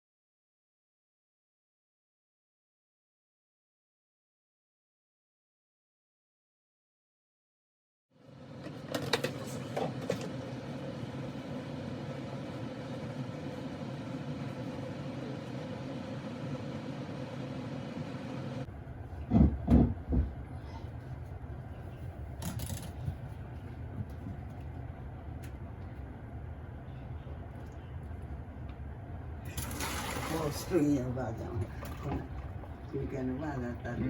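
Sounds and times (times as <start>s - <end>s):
pot boiling with low rumble: 8.2s - 22.4s, 23.0s - 34.0s.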